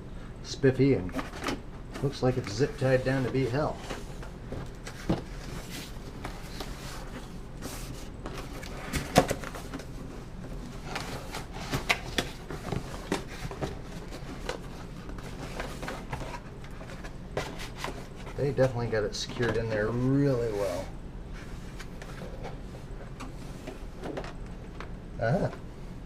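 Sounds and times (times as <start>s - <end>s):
plastic and cardboard packaging handled: 1.1s - 24.4s.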